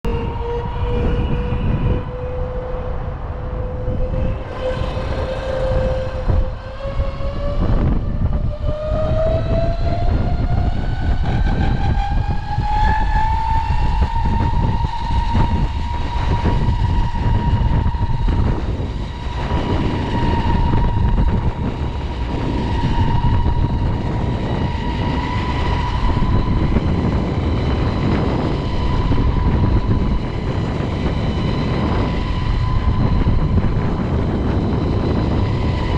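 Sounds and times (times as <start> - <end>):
wind rushing on microphone: 0.0 - 35.9.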